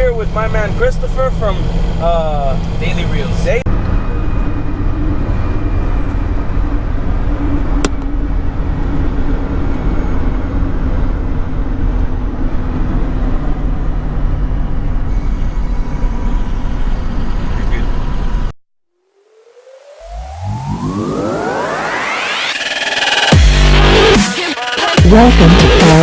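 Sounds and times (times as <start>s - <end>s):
car engine and tyre rumble: 0.0s - 18.5s.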